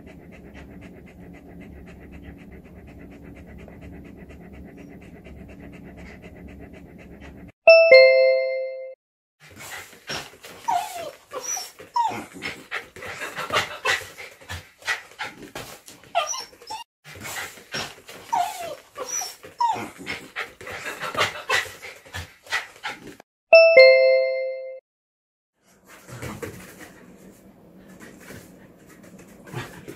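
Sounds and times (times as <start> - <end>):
two-note falling chime: 7.7 - 9.0, 23.6 - 24.8
dog whimpering: 10.6 - 12.3, 16.2 - 16.9, 18.3 - 20.0.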